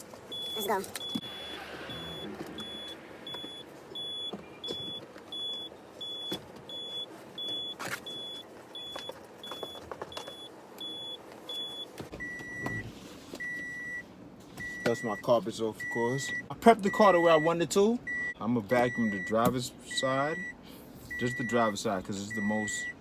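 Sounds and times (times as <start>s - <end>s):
low long beep: 0.3s - 9.0s
car warning chime beeping: 0.3s - 12.8s, 13.4s - 14.0s, 14.6s - 23.0s.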